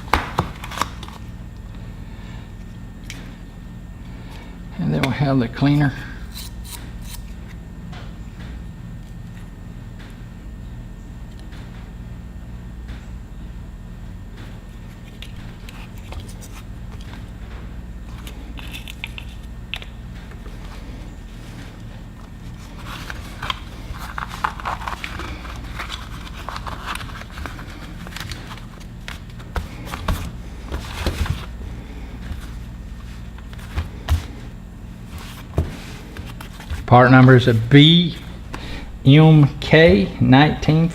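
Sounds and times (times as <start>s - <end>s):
steady low hum: 0.0s - 40.9s
packaging crinkling: 22.2s - 31.6s.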